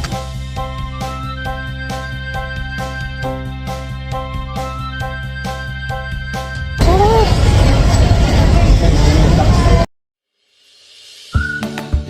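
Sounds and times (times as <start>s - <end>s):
keyboard tune: 0.4s - 7.2s.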